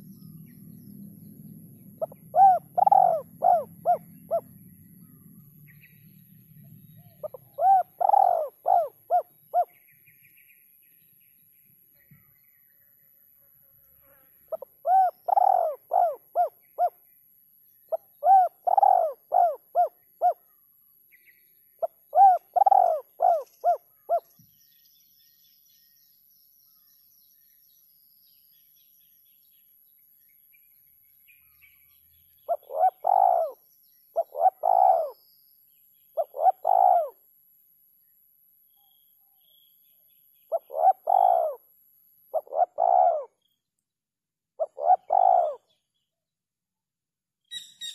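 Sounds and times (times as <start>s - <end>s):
dove cooing: 2.0s - 4.7s, 7.0s - 9.8s, 14.5s - 17.0s, 17.9s - 20.4s, 21.8s - 24.3s, 32.5s - 33.6s, 34.2s - 35.2s, 36.2s - 37.2s, 40.5s - 41.6s, 42.3s - 43.4s, 44.6s - 45.6s.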